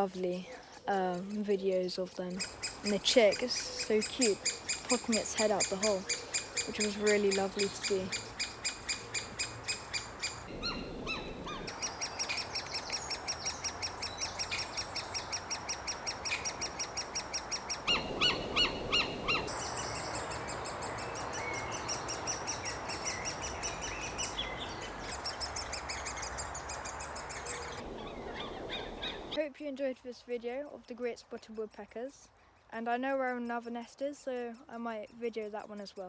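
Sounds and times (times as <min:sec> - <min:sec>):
woodpecker chicks calling: 0:00.0 - 0:10.5, 0:11.7 - 0:29.3.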